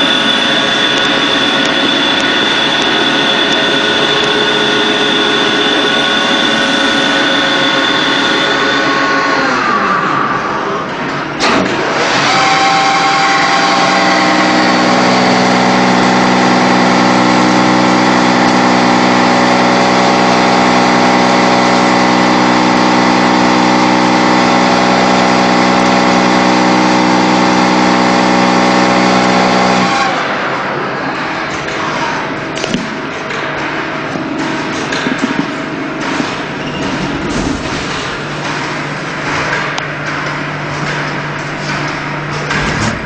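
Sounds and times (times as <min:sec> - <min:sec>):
lathe motor hum: 0:00.0 - 0:10.8, 0:11.8 - 0:31.0.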